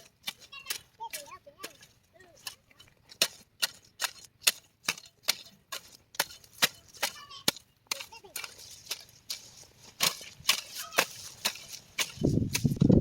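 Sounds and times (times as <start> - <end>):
tool chopping strikes: 2.4 - 9.4, 10.0 - 13.0.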